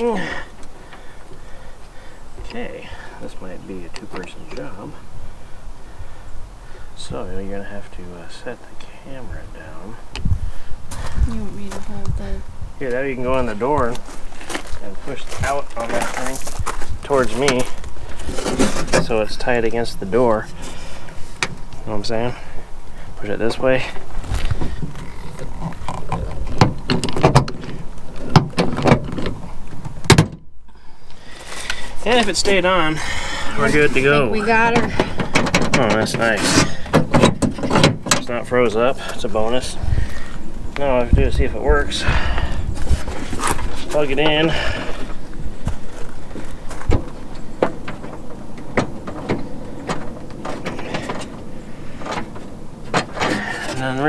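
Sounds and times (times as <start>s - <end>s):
sharp clicks and clunks: 24.8s - 30.4s, 34.7s - 38.3s, 52.0s - 53.9s.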